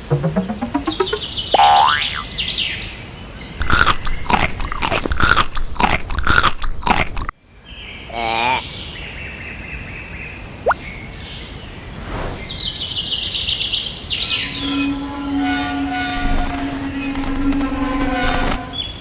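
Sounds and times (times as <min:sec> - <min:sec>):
short warbling tone: 0:00.0 - 0:02.2
crunching: 0:03.6 - 0:07.3.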